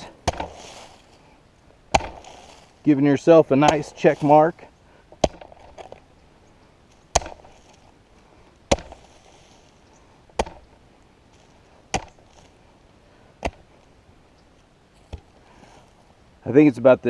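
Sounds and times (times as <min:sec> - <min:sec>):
hoe chopping into ground: 0:00.0 - 0:01.2, 0:01.9 - 0:06.0, 0:06.9 - 0:07.9, 0:08.7 - 0:10.8, 0:11.4 - 0:12.5, 0:13.4 - 0:13.7.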